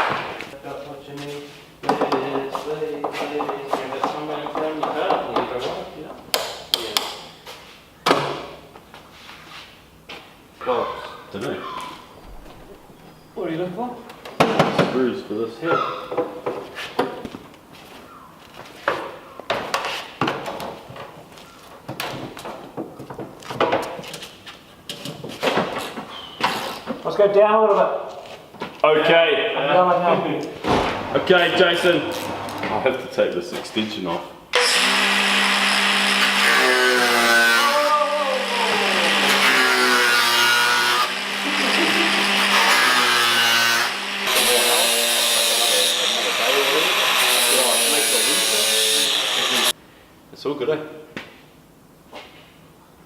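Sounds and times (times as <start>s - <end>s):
power tool cutting sheet metal: 34.6s - 49.8s.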